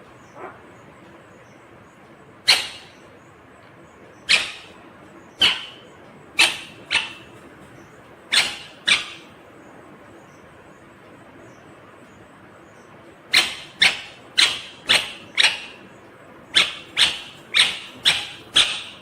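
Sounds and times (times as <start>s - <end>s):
parrot calling: 0.2s - 0.9s, 2.4s - 3.1s, 4.2s - 9.5s, 13.2s - 19.0s.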